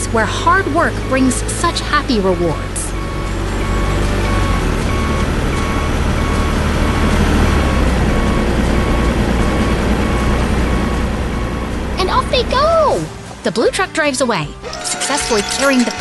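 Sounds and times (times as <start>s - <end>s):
truck engine rumbling: 0.0s - 16.0s
reversing alarm beeping: 0.2s - 12.6s.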